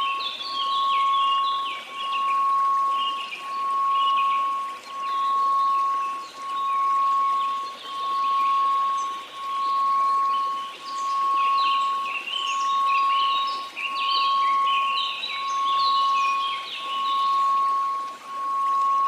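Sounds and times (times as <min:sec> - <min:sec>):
birdsong chirping: 0:00.0 - 0:19.0
sine tone: 0:00.0 - 0:19.0
white noise hiss: 0:00.0 - 0:19.0.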